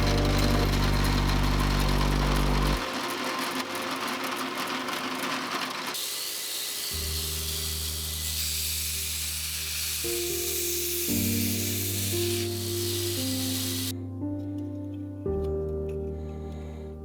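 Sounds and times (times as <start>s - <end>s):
steady low hum: 0.0s - 2.8s
belt grinder grinding steel: 0.0s - 13.9s.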